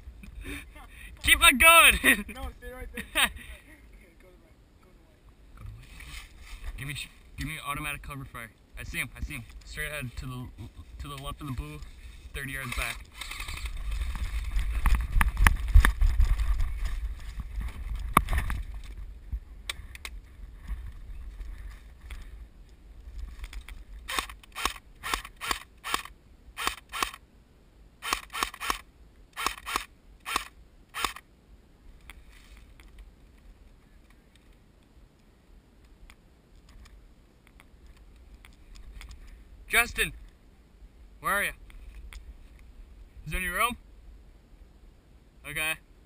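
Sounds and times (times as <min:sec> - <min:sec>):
microphone handling noise: 0:10.5 - 0:24.1
wind on microphone: 0:13.2 - 0:24.1
airsoft rifle shots: 0:24.1 - 0:27.2, 0:28.0 - 0:28.8, 0:29.4 - 0:31.2.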